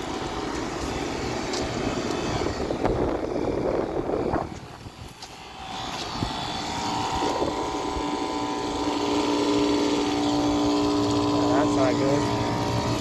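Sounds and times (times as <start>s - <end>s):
air-conditioner unit humming: 5.4s - 13.0s.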